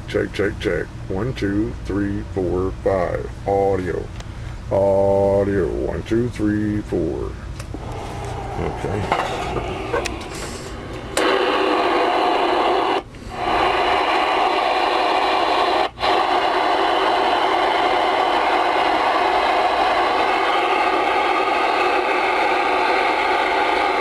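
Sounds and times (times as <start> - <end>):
radio static hissing: 7.7 - 24.0.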